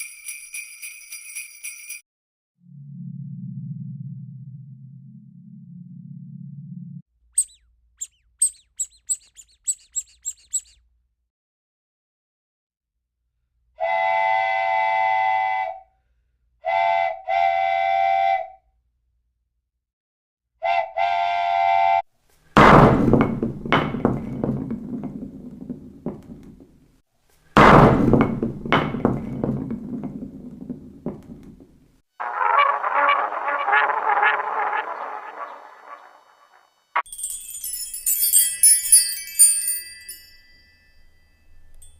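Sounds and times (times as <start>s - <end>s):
short high chirps: 7.4s - 10.8s.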